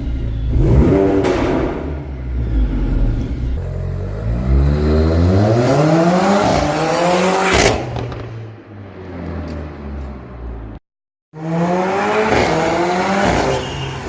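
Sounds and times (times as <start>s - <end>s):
car engine accelerating: 0.0s - 10.7s.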